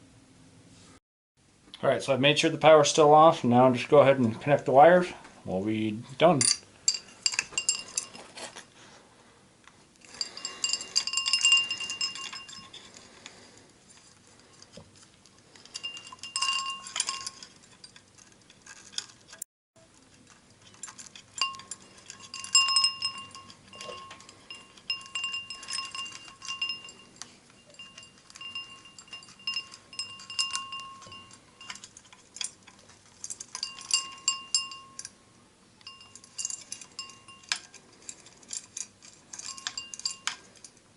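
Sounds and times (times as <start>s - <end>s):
small metal parts clinking: 6.3s - 8.6s, 10.0s - 35.2s, 35.8s - 40.9s
scraping and rubbing: 10.0s - 34.8s.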